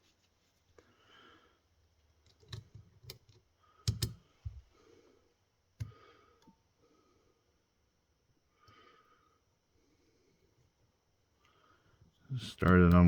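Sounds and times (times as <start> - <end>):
small plastic parts clicking: 2.2 - 4.2.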